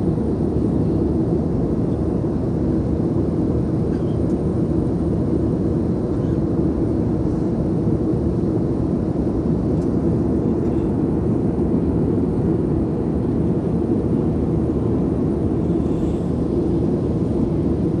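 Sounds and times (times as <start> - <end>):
aircraft cabin drone: 0.0 - 18.0.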